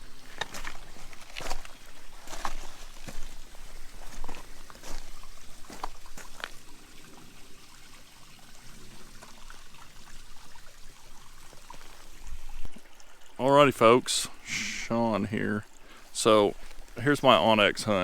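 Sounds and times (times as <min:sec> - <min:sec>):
creek trickling over rocks: 0:00.0 - 0:18.0.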